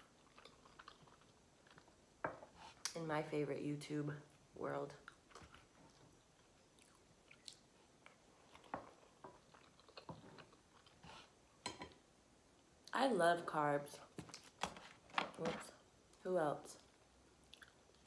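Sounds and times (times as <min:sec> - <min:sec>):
chewing pasta: 0:00.0 - 0:03.0, 0:04.3 - 0:11.4, 0:16.8 - 0:18.0.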